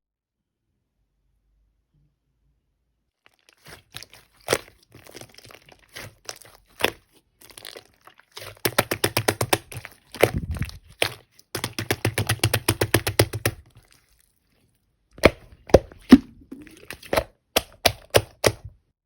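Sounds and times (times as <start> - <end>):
slime crackling and popping: 3.3 - 14.4, 15.2 - 18.7.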